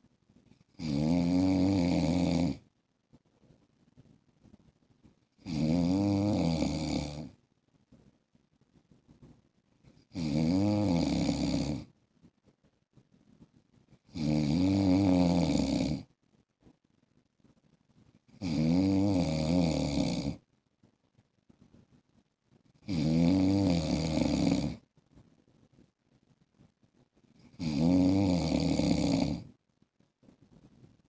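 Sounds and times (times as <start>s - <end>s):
man snoring: 0.8s - 2.6s, 5.4s - 7.3s, 10.1s - 11.9s, 14.1s - 16.1s, 18.4s - 20.4s, 22.8s - 24.8s, 27.5s - 29.5s.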